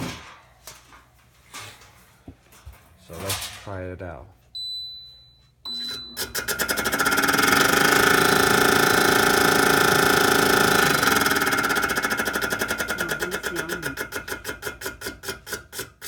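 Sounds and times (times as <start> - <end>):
short beep: 4.6 - 6.4
range hood fan grinding: 6.4 - 16.0.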